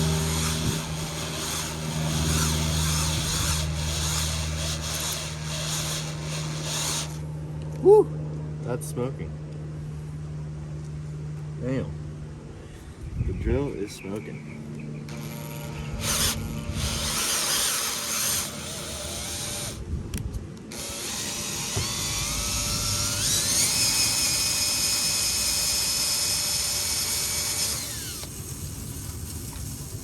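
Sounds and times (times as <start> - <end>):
electric drill whining: 0.0 - 7.3, 15.1 - 19.8, 20.7 - 29.9.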